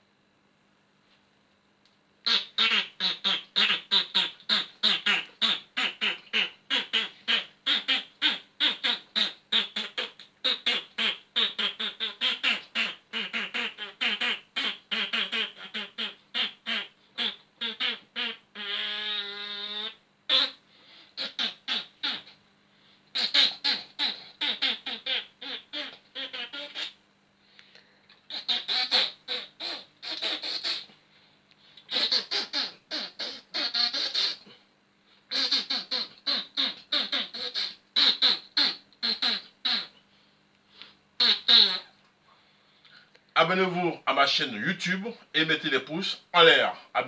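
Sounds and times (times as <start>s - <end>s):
person making mouth noises: 2.2s - 20.6s, 21.2s - 22.4s, 23.1s - 27.0s, 28.3s - 30.9s, 31.8s - 34.6s, 35.3s - 40.0s, 41.2s - 42.0s, 43.4s - 47.0s
held pitched vocal sound: 43.4s - 47.0s.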